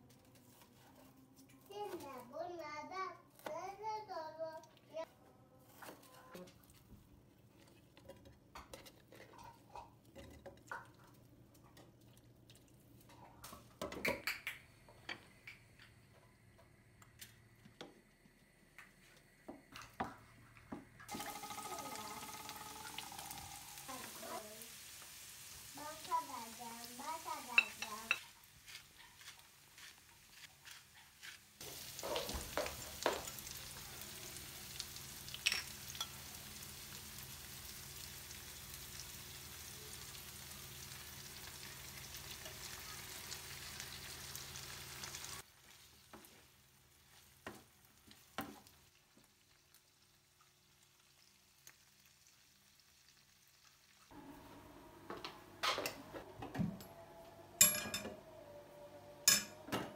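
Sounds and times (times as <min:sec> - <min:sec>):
food sizzling in a pan: 0:21.1 - 0:56.1, 0:59.2 - 0:59.6.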